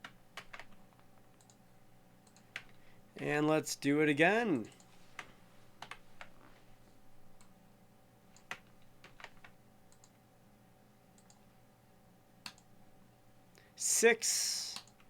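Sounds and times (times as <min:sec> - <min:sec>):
computer clicks: 0:00.0 - 0:01.6, 0:02.2 - 0:02.8, 0:08.4 - 0:10.2, 0:11.2 - 0:11.5, 0:12.4 - 0:12.7, 0:14.8 - 0:15.0.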